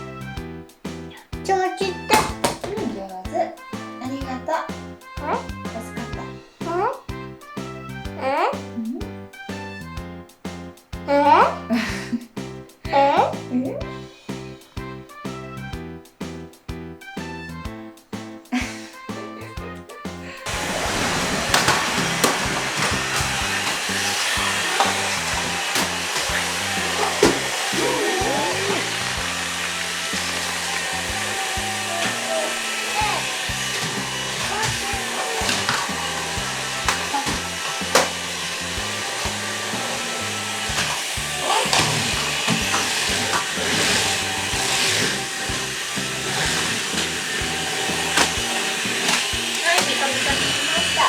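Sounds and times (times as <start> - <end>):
background music with bass: 0.0 - 51.0
vacuum cleaner running: 1.8 - 3.0, 20.4 - 51.0.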